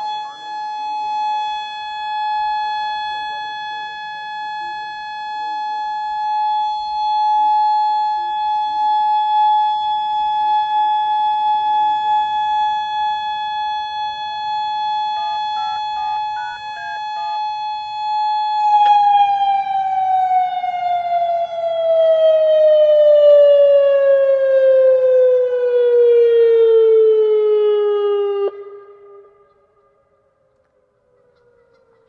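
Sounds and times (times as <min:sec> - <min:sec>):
electronic warning siren: 0:00.0 - 0:32.0.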